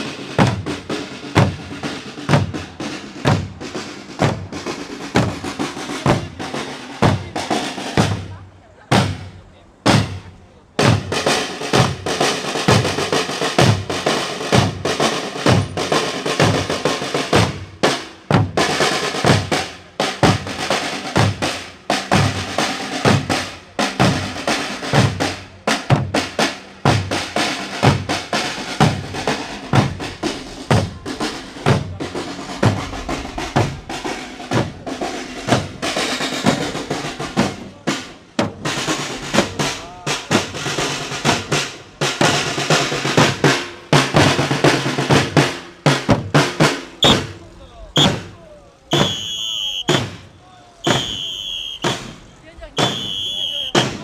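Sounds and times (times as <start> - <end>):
snare drum rolls: 0.0 - 54.0
bass drum strikes: 27.8 - 40.6.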